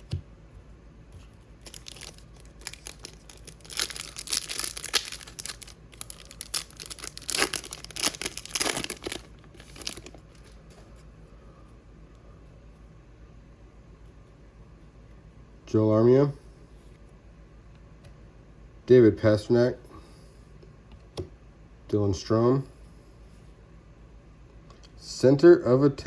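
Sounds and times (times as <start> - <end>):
plastic wrapper crinkling and tearing: 1.6 - 10.6.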